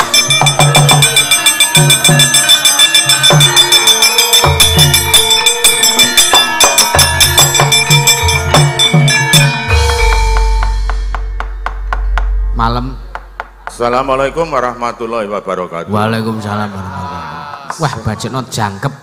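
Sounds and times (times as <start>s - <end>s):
gamelan metallic strikes: 0.0s - 15.0s.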